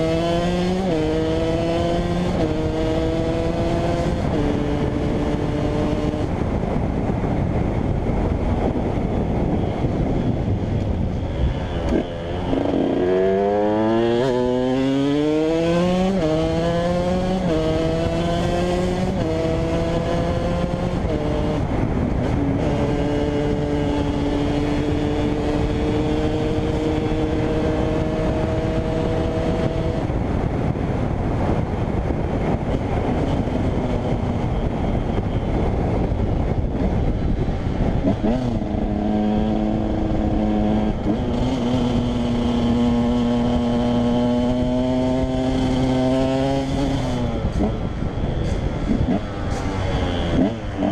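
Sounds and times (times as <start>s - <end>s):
two-stroke motorcycle engine revving: 0.0s - 50.9s.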